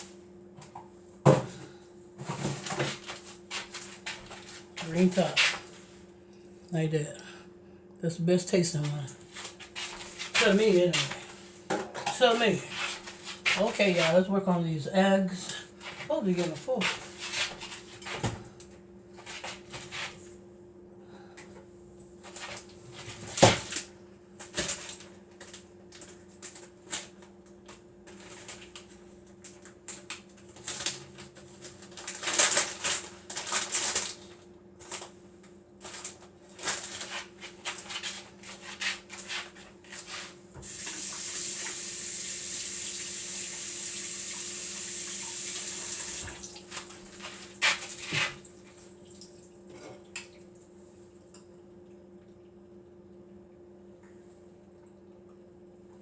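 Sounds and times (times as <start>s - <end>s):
running liquid: 40.6s - 47.0s.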